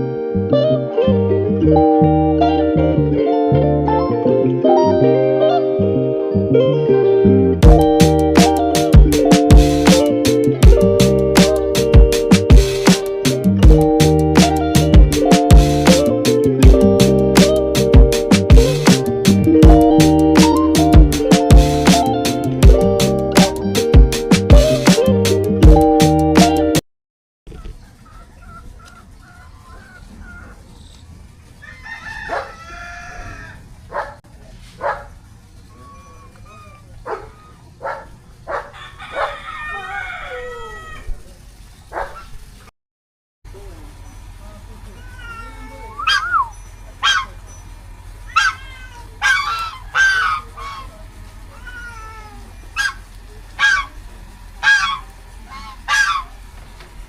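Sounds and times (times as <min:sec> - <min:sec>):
geese honking: 0:27.5 - 0:30.7, 0:46.1 - 0:47.6, 0:48.3 - 0:56.5
rooster crowing: 0:31.6 - 0:34.1, 0:38.5 - 0:41.2, 0:48.4 - 0:51.0, 0:54.6 - 0:56.4.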